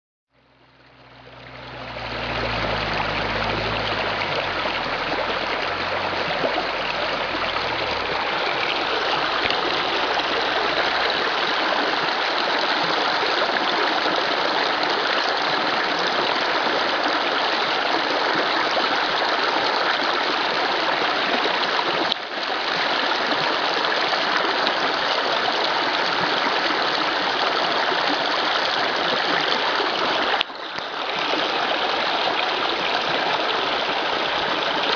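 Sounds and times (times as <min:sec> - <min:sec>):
low rumble: 0:00.4 - 0:11.4
creek water rushing: 0:00.4 - 0:34.9.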